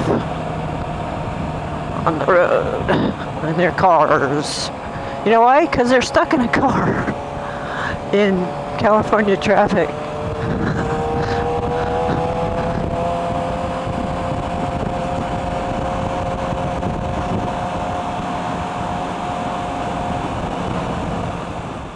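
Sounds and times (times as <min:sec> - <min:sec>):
motorcycle engine cruising: 0:00.0 - 0:21.9
road noise: 0:00.0 - 0:21.9
wind noise: 0:00.0 - 0:21.9.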